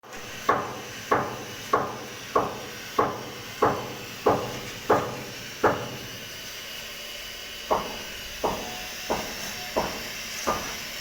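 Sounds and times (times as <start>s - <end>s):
steady hiss: 0.0s - 11.0s
machinery knocking rhythmically: 7.7s - 10.7s.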